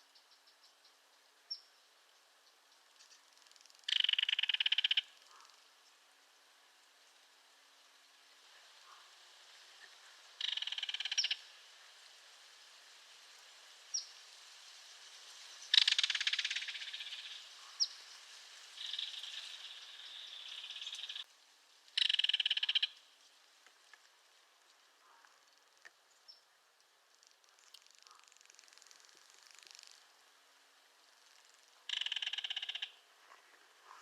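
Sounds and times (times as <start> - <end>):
kingfisher rattle call: 3.9 - 5.5, 10.4 - 11.5, 15.7 - 17.9, 18.8 - 21.2, 22.0 - 23.0, 31.4 - 33.0
high bird chirps: 18.8 - 21.2.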